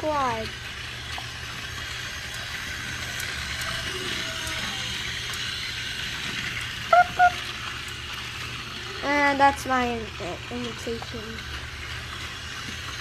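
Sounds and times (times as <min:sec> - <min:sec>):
toy train whirring and rattling: 0:00.0 - 0:13.0
short high-pitched tones: 0:06.9 - 0:07.5.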